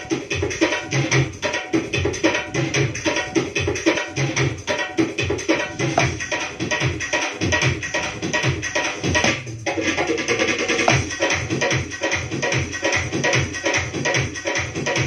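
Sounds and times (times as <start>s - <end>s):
sharp percussion strikes: 0.0s - 15.0s
deep bass thumps: 5.9s - 6.2s.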